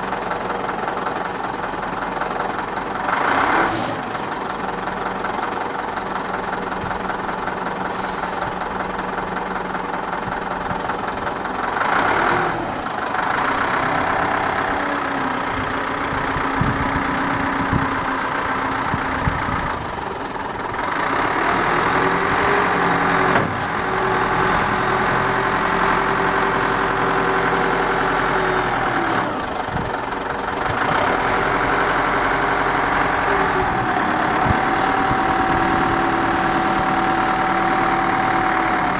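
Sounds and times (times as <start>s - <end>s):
diesel engine surging: 0.0s - 38.9s.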